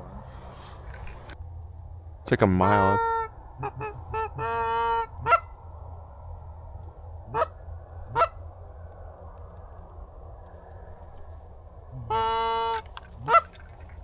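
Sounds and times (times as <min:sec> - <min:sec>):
wind noise: 0:00.0 - 0:14.0
goose honking: 0:02.5 - 0:05.5, 0:07.3 - 0:08.4, 0:12.0 - 0:13.7.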